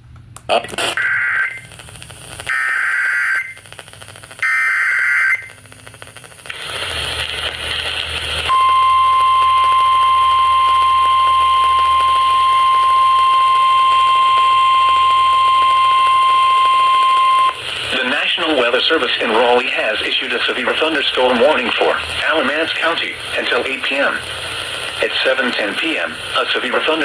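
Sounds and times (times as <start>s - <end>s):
radio hiss: 0.4s - 27.0s
steady warning alarm tone: 8.5s - 17.6s.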